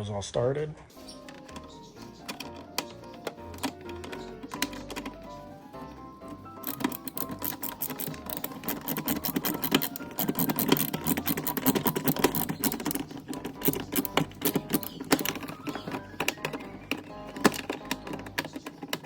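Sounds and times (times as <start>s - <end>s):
ratchet clicking rapidly: 6.6s - 15.4s.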